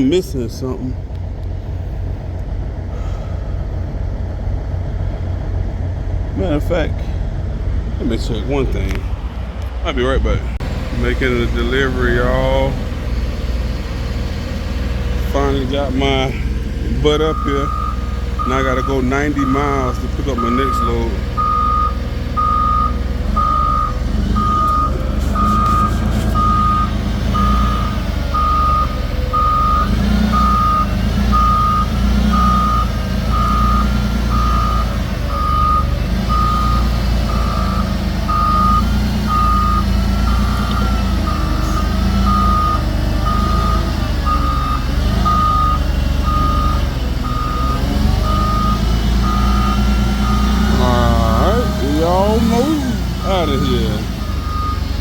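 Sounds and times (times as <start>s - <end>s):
truck engine running: 0.0s - 55.0s
reversing alarm beeping: 17.2s - 55.0s.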